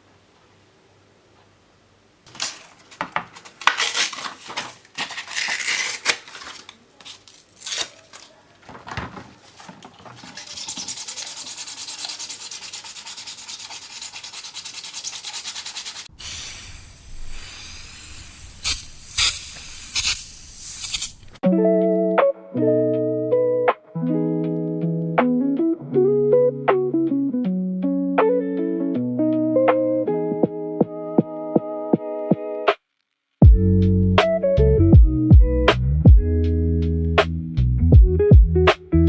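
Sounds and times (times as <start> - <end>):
hand sanding strokes: 9.4 - 16.1.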